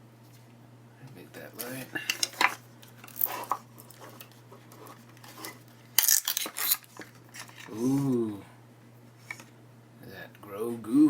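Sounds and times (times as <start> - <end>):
plastic packaging crinkling: 1.5 - 7.8.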